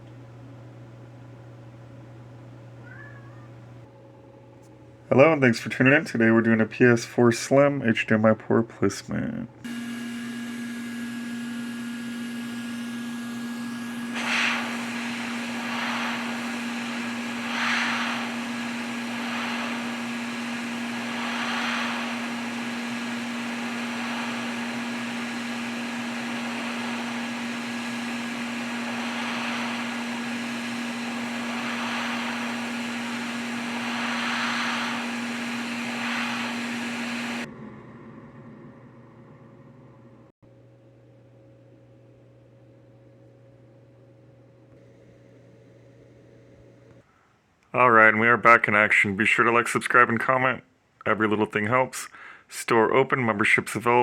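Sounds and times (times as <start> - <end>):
low hum: 9.4 - 47.0
small blower hissing: 9.6 - 37.5.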